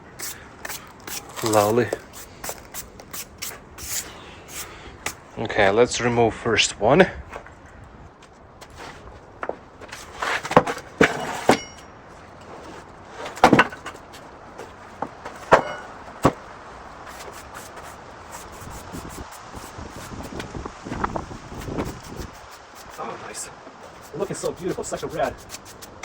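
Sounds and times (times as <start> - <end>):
wooden slab knocks and thumps: 9.4 - 11.8, 13.2 - 14.0, 14.6 - 16.4.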